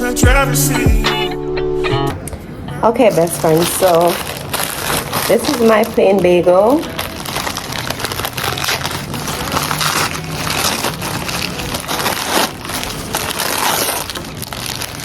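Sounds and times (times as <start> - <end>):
paper wrapping crinkling: 3.0 - 15.0.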